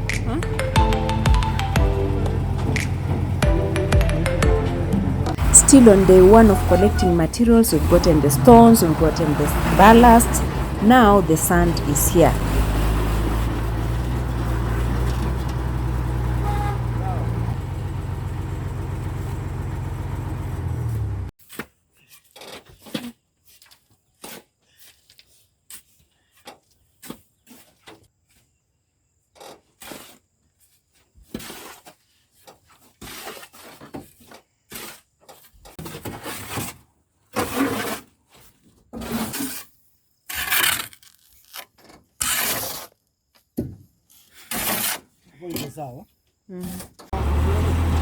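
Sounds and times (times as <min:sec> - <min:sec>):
shovels scraping sand: 0:42.2 - 0:43.0, 0:44.3 - 0:45.1.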